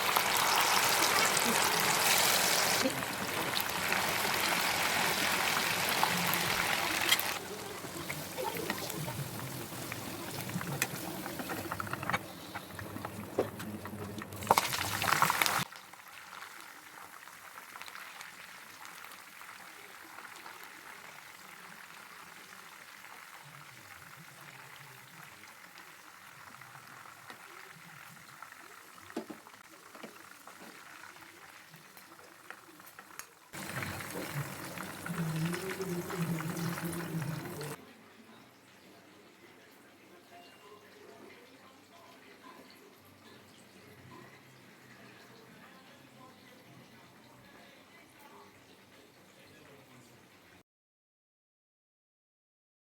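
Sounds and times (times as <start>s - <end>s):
food sizzling in hot oil: 0.0s - 13.6s, 14.2s - 37.8s.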